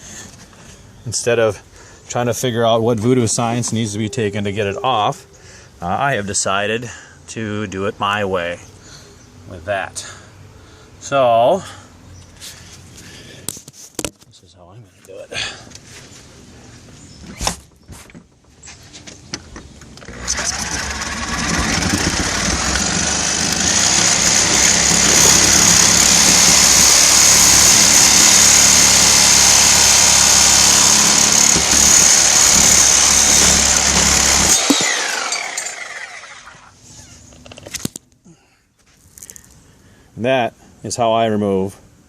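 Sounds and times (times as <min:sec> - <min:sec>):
power tool cutting metal lock: 0:20.0 - 0:36.6
power tool winding down whine: 0:20.0 - 0:36.7.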